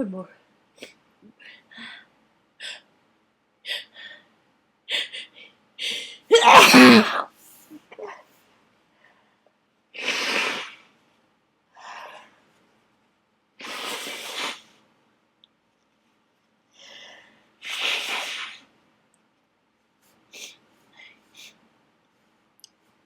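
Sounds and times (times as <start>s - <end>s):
in-breath: 1.3s - 2.9s, 3.8s - 4.3s, 8.9s - 9.5s, 11.8s - 12.5s, 16.7s - 17.6s
person sneezing: 6.3s - 7.3s.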